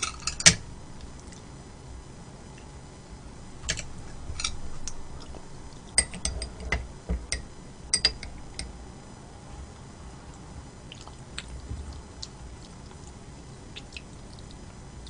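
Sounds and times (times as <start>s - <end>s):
utensils clinking on a dish: 6.0s - 8.7s.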